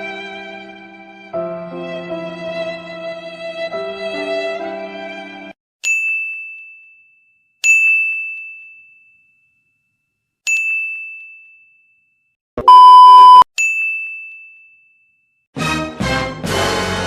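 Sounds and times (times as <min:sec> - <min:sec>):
sad violin music: 0:00.0 - 0:05.5.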